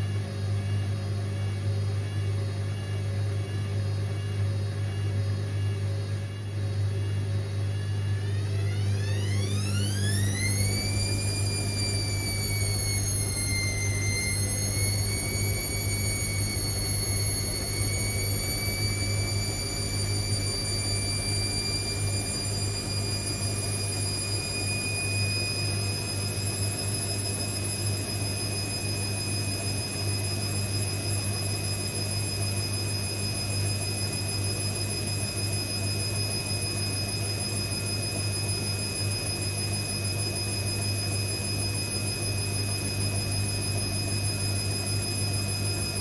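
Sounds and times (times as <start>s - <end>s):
steady low hum: 0.0s - 26.6s
washing machine motor whine: 0.0s - 46.0s.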